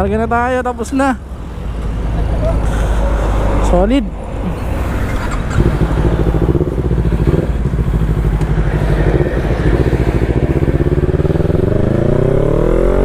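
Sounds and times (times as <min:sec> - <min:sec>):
motorcycle engine riding off: 0:04.9 - 0:13.0.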